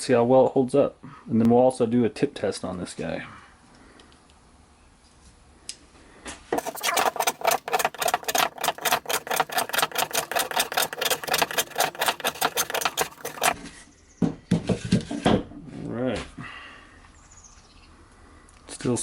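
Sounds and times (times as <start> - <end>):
knife cutting strokes: 6.6 - 13.6.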